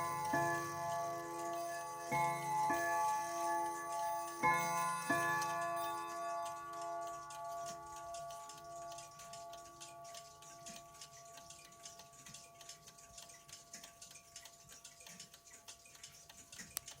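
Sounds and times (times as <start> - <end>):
clock chime tones: 0.0 - 12.9
clock ticking: 0.0 - 17.0.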